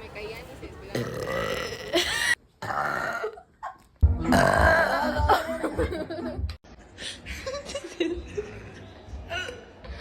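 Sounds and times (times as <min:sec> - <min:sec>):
laughter and chuckling: 0:05.0 - 0:10.0.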